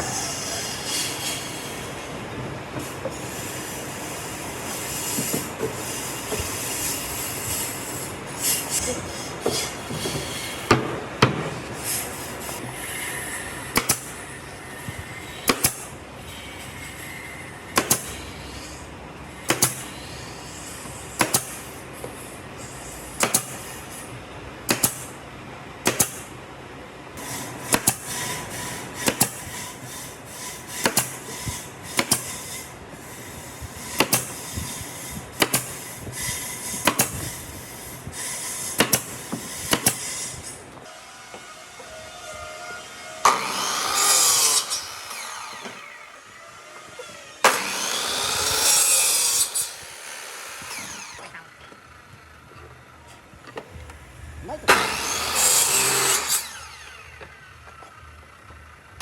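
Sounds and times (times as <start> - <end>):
machine noise with high whine: 0.0 - 59.0.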